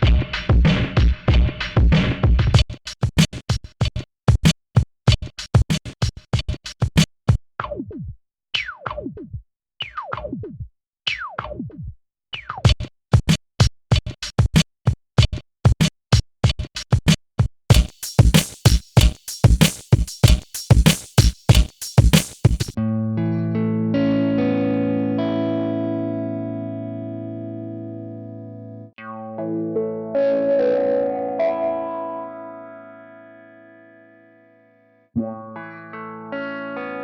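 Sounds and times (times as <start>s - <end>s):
stuttering drum loop: 0.0s - 4.5s, 16.5s - 22.8s.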